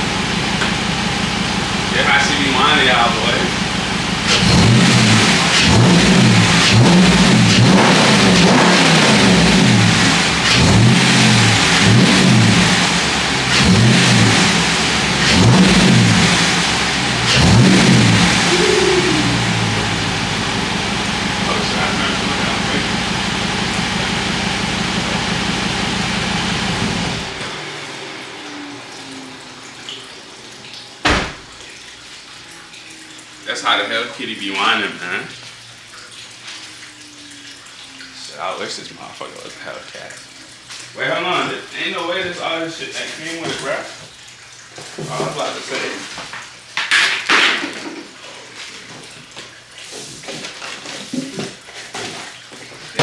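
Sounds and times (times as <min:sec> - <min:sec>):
car engine with intake whine: 0:00.0 - 0:30.6
loud thump: 0:31.0 - 0:31.5.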